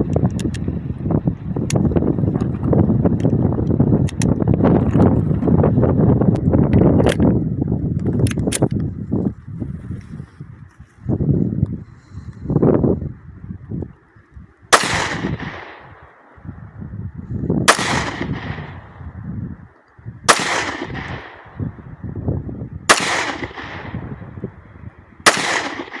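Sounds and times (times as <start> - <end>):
pistol shots: 14.7 - 16.2, 17.7 - 18.9, 20.3 - 21.6, 22.9 - 24.1, 25.2 - 26.0.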